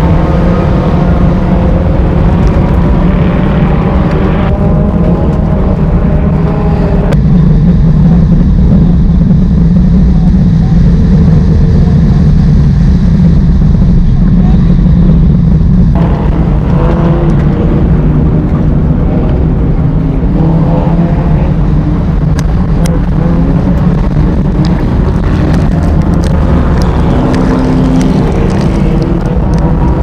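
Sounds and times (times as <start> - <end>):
heavy low rumble: 0.0 - 30.0
race car engines revving: 0.0 - 30.0.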